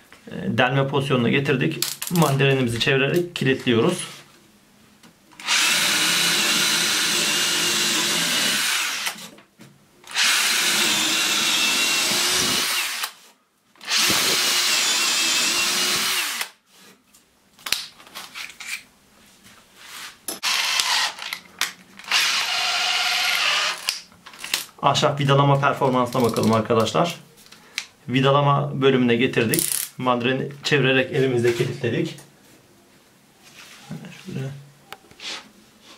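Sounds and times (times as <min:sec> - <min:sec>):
cordless drill boring into wood: 0:05.4 - 0:09.2, 0:10.1 - 0:13.2, 0:13.8 - 0:16.6, 0:20.4 - 0:21.4, 0:22.0 - 0:24.0.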